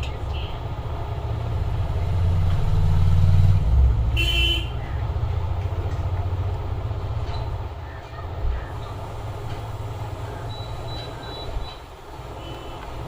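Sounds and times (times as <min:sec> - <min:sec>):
road traffic rumble: 0:00.0 - 0:13.0
vehicle horn toot: 0:04.2 - 0:04.8, 0:12.4 - 0:12.8.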